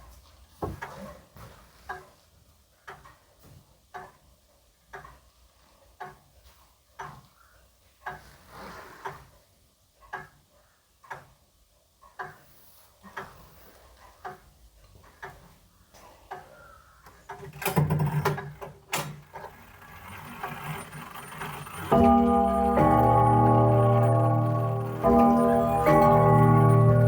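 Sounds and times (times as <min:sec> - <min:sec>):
clatter of knocks and rattling: 0:17.3 - 0:27.0
grandfather clock ticking: 0:19.3 - 0:27.0
low hum: 0:21.7 - 0:27.0.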